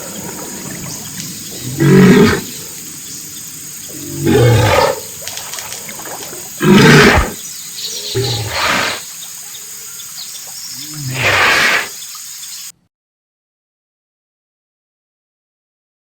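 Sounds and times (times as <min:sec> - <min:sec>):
hippopotamus calling: 0:00.0 - 0:12.6.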